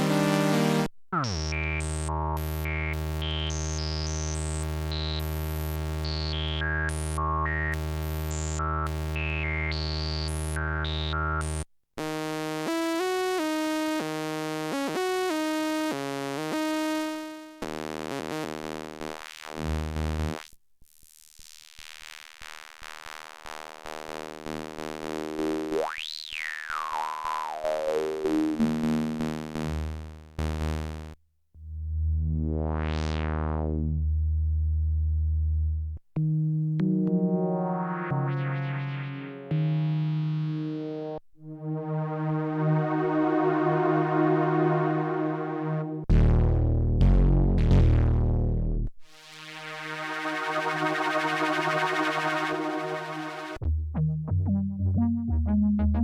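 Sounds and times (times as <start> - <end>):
synthesizer playing notes: 0.0 - 9.2, 36.3 - 48.8, 49.4 - 56.0
resonant filter sweep: 37.0 - 46.3, 49.4 - 53.6
held bass note: 41.5 - 48.9.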